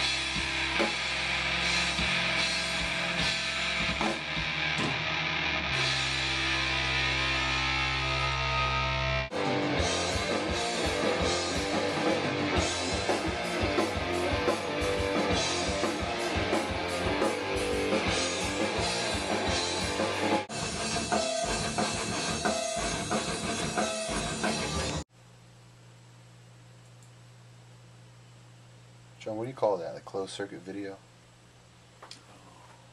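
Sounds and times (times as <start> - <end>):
distorted electric guitar: 0.0 - 25.0
drum kit: 0.0 - 25.0
faint low amp hum: 25.1 - 32.9.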